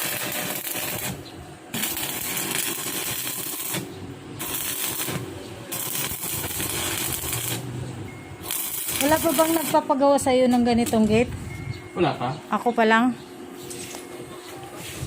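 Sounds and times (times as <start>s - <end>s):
arc welding crackling and hissing: 0.0s - 11.3s.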